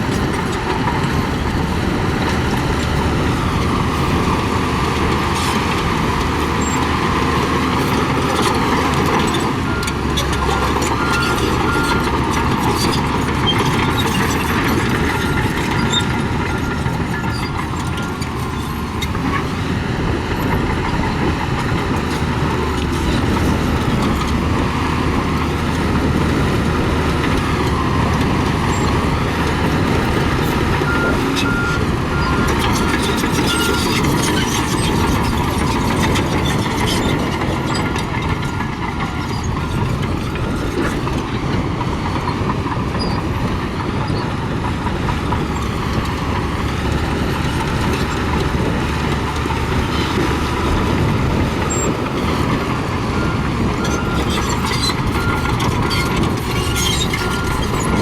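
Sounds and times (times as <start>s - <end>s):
diesel bulldozer engine running: 0.0s - 58.0s.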